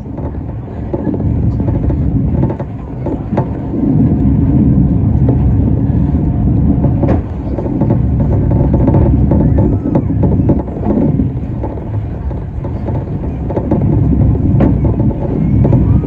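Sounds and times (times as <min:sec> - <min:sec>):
funicular wheels rumbling on rails: 0:00.0 - 0:16.0.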